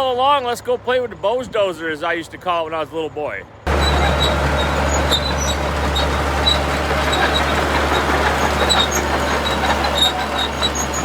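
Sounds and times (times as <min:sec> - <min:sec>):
diesel vehicle engine droning: 0:03.7 - 0:11.0
high squeaks: 0:03.7 - 0:11.0
metallic rattles: 0:03.7 - 0:11.0.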